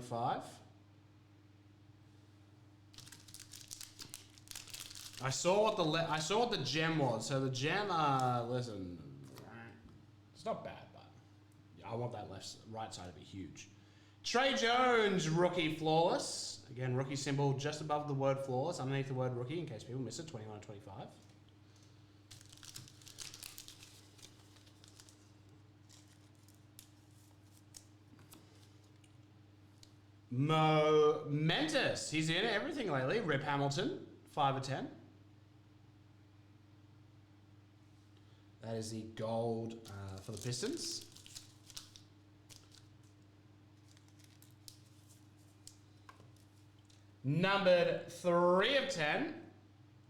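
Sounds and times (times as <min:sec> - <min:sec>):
low electrical hum: 0:00.0 - 0:50.0
trading cards rustling: 0:03.0 - 0:06.0, 0:21.8 - 0:29.2, 0:39.8 - 0:47.1.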